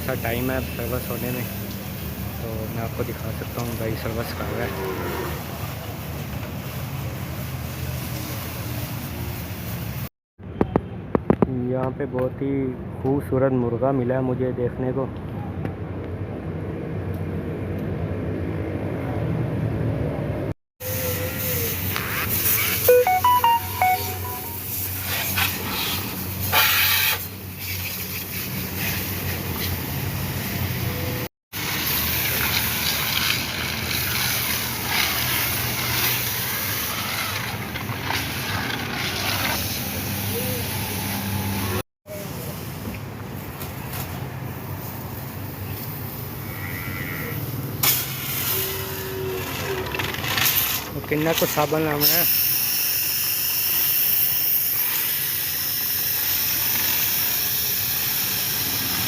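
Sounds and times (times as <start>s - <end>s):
pressure washer spraying: 24.7s - 30.6s, 31.6s - 41.5s, 47.8s - 48.6s, 52.0s - 59.0s.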